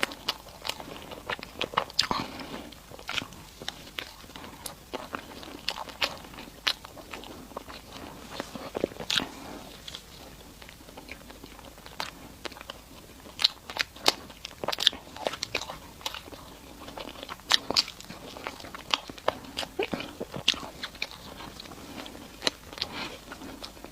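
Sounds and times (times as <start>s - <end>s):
person chewing food: 0.0s - 23.9s.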